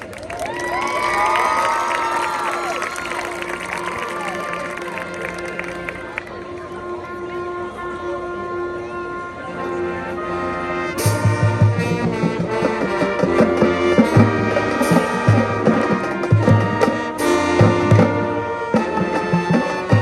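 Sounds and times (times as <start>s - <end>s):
marching band brass chords: 1.8s - 20.0s.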